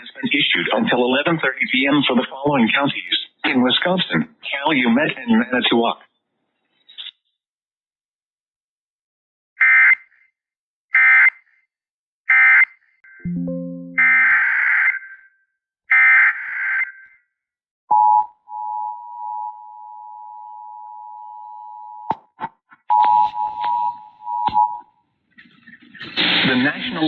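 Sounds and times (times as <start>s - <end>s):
brief low tone: 13.2s - 14.5s
two-tone attention signal: 13.2s - 14.6s.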